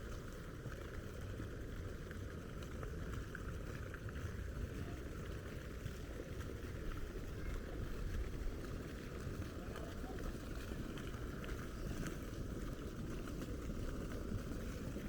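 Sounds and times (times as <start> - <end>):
low uneven rumble: 0.0 - 15.0.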